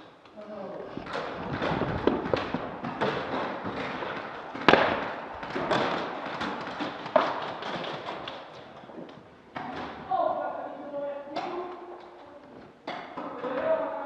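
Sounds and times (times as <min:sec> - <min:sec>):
loud sharp bangs: 0:01.2 - 0:08.2
airsoft gunfire: 0:04.6 - 0:07.4.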